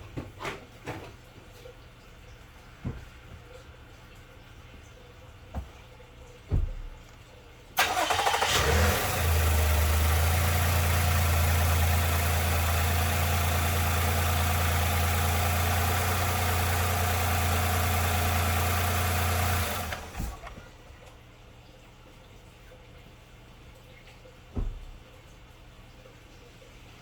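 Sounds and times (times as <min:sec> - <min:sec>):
car engine starting and idling: 0:07.8 - 0:20.7
short thumps: 0:24.5 - 0:25.0.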